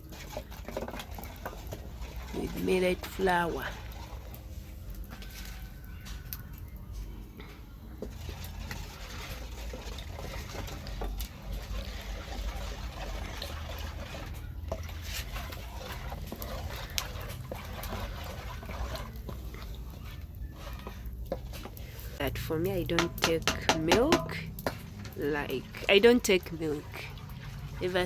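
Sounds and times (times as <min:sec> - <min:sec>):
flour stirred into milk: 0:00.0 - 0:28.0.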